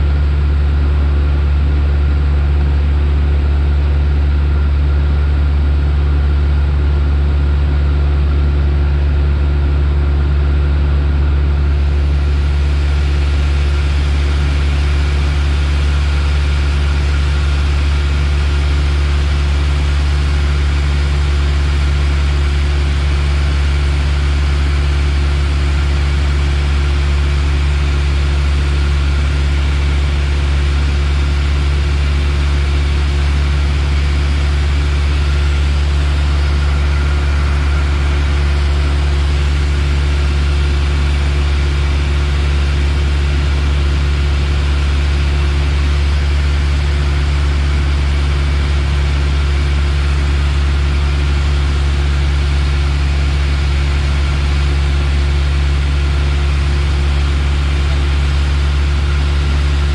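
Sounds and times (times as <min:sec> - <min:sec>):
aircraft engine droning: 0:11.5 - 0:17.7, 0:27.5 - 0:48.9.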